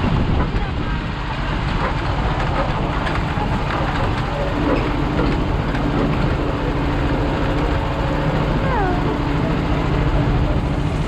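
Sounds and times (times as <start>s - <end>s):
vehicle low rumble: 0.0s - 11.0s
steady hum: 2.9s - 11.0s.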